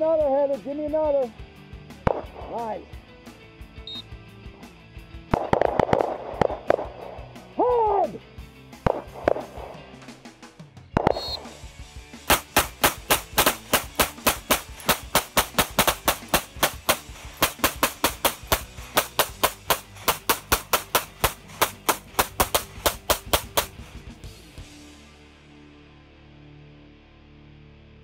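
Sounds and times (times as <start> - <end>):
handgun shots: 11.0 - 11.5, 12.3 - 23.9.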